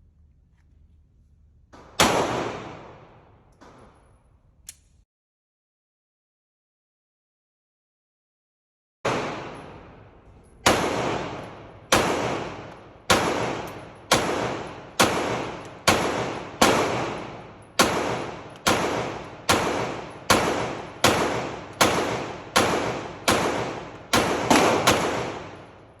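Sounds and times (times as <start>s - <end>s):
pistol shots echoing: 1.8s - 3.8s, 9.1s - 26.0s.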